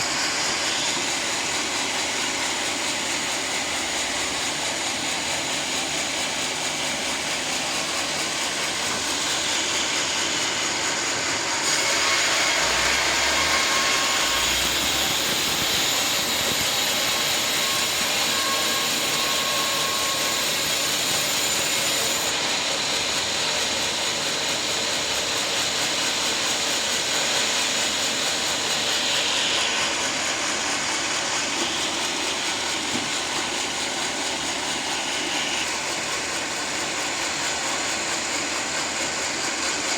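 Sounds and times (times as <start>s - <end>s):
sawmill blade cutting log: 0.0s - 39.9s.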